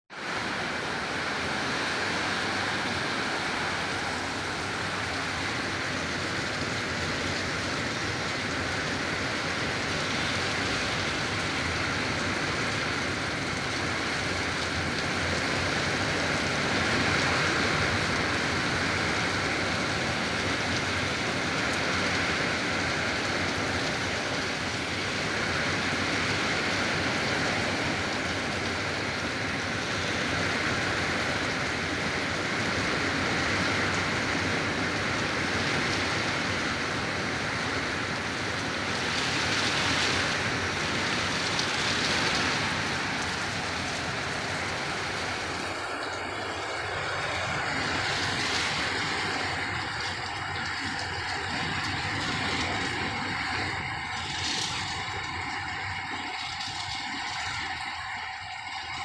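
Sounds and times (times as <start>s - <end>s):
heavy rain pouring: 0.1s - 59.0s.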